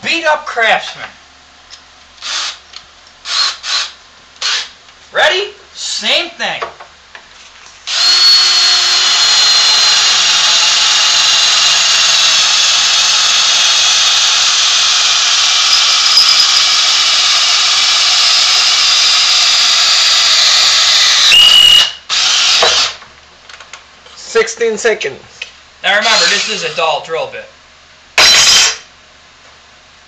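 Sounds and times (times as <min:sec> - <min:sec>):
cordless drill cutting metal: 0:02.2 - 0:02.6, 0:03.2 - 0:04.7, 0:07.9 - 0:23.0, 0:26.0 - 0:26.9, 0:28.2 - 0:28.8.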